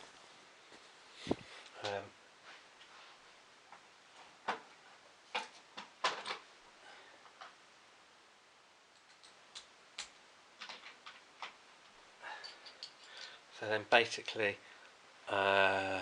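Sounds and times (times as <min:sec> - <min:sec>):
small parts clicking and tapping: 0:08.9 - 0:13.4.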